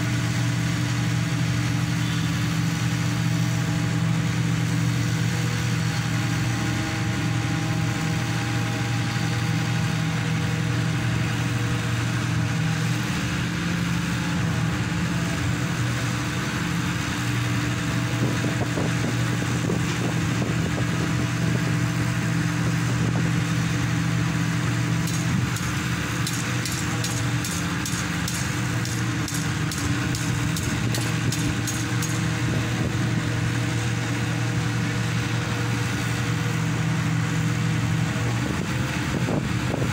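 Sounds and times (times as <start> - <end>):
pile driver engine running: 0.0 - 39.9
high sharp ticks: 25.0 - 32.2.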